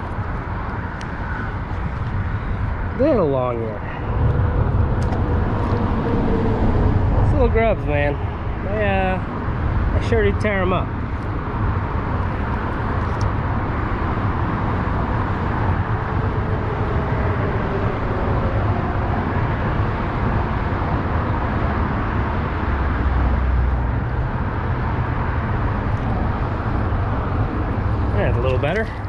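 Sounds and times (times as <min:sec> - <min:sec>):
heavy vehicle passing: 0:00.0 - 0:13.0
highway traffic rumble: 0:00.0 - 0:29.0.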